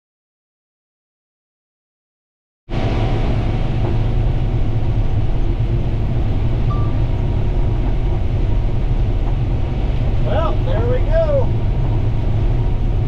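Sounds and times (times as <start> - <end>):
combine harvester engine rumble: 2.7 - 13.0.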